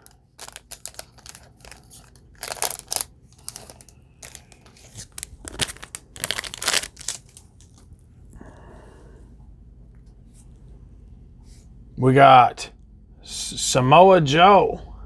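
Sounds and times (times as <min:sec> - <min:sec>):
wrapper being torn and crinkled: 0:00.0 - 0:07.9.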